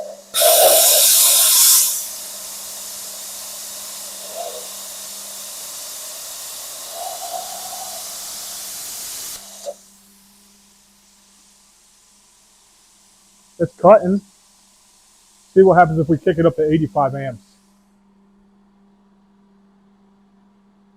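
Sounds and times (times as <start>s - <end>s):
plasma cutter hissing: 0.0s - 17.8s
faint steady hum: 9.4s - 20.9s.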